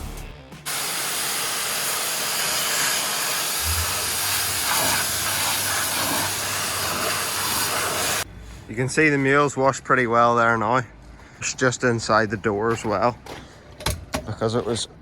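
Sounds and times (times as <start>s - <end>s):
pressure washer spraying: 0.7s - 8.2s.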